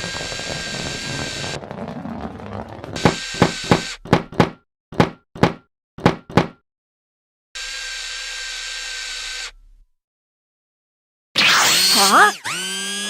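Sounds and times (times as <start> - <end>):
sharp knocks and thuds: 0.0 - 6.6.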